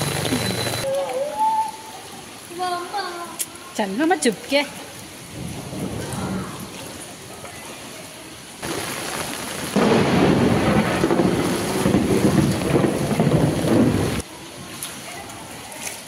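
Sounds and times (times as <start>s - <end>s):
heavy rain falling: 0.0s - 16.0s
rumbling thunder: 5.3s - 6.8s, 8.6s - 14.2s.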